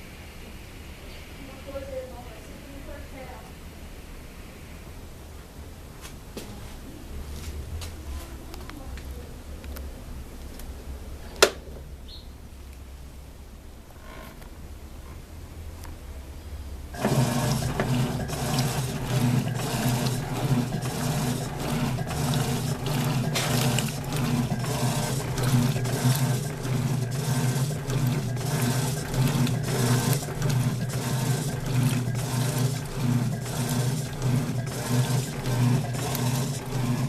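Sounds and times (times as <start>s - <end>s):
washing machine motor hum: 16.8s - 37.0s
water and clothes sloshing: 17.0s - 37.0s.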